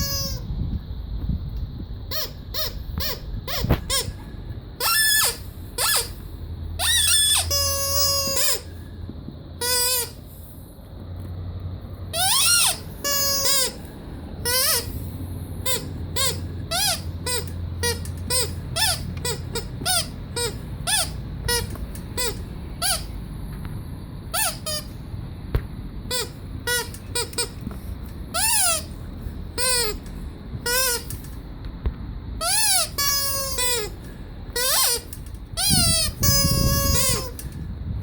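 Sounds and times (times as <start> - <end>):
rubber squeaky toy squeaking: 0.0 - 0.5, 2.1 - 8.8, 9.6 - 10.3, 12.1 - 23.2, 24.3 - 25.0, 26.0 - 31.4, 32.4 - 37.5
steady low hum: 0.0 - 38.0.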